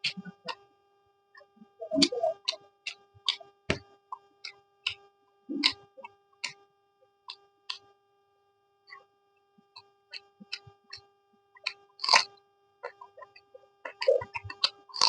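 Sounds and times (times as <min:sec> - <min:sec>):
faint steady hum: 0:00.0 - 0:15.0
person chewing food: 0:09.7 - 0:11.0, 0:11.6 - 0:15.0.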